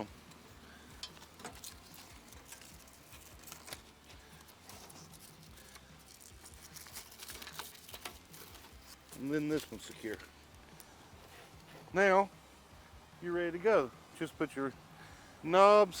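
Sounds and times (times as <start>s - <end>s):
strap rustling: 0.0s - 12.0s.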